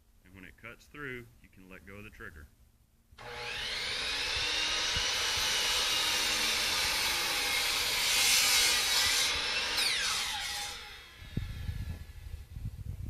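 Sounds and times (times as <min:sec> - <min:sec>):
saw motor winding down: 0:03.2 - 0:12.2
electric saw cutting wood: 0:03.2 - 0:12.4.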